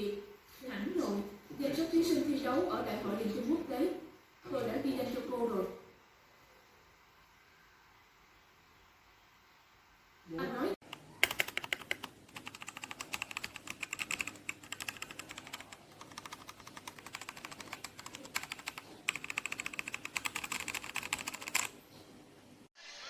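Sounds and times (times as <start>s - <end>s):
mechanical keyboard key clicks: 10.9s - 21.7s.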